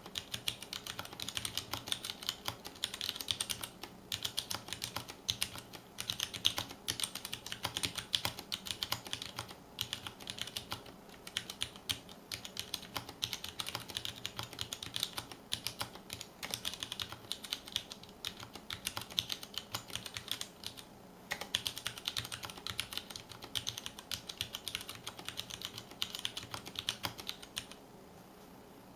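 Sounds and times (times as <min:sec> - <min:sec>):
mechanical keyboard typing: 0:00.0 - 0:27.8.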